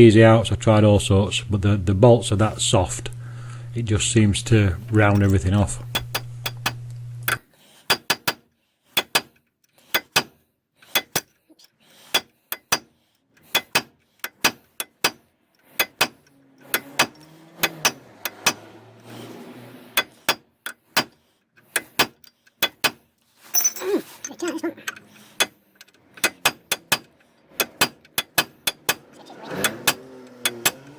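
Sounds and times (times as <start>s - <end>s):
hammer striking chisel: 4.7s - 11.3s, 12.1s - 18.7s, 20.0s - 23.7s, 26.2s - 30.9s.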